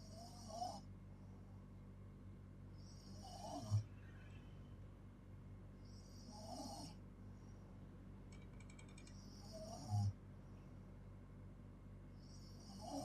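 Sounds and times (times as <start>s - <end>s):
faint clicks: 8.3s - 9.3s
girl snoring: 12.5s - 13.0s.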